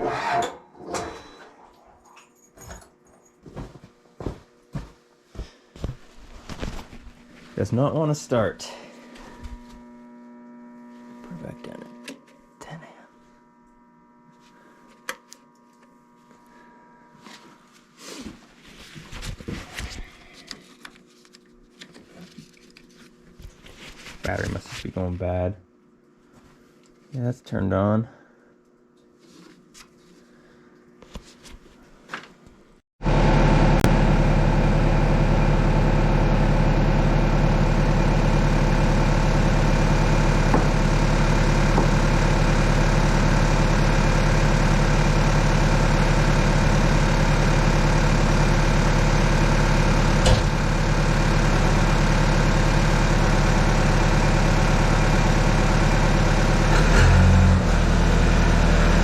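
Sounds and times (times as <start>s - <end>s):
diesel engine idling: 33.1s - 59.0s.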